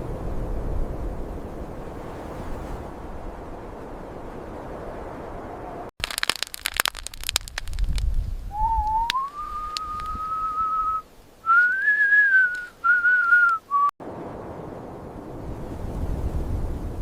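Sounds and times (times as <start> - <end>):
sharp clicks and crackles: 6.0 - 10.2
whistle notes: 8.5 - 13.9.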